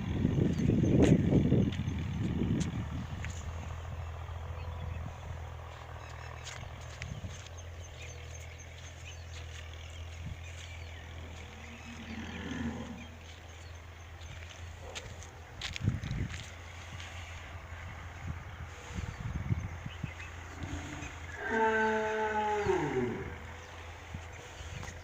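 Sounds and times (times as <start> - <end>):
steady low hum: 0.0 - 25.0
cow mooing: 11.6 - 13.2, 20.5 - 23.6.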